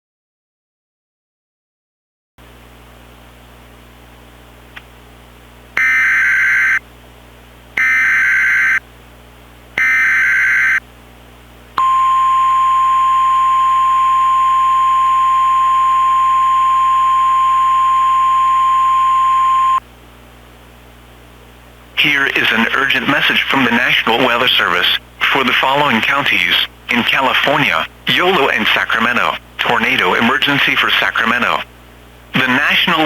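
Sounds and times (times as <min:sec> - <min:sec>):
steady high alarm tone: 0:05.8 - 0:06.8, 0:07.8 - 0:08.8, 0:09.8 - 0:10.8, 0:11.8 - 0:19.8
screechy warbling data tones: 0:07.8 - 0:08.8, 0:09.8 - 0:10.8.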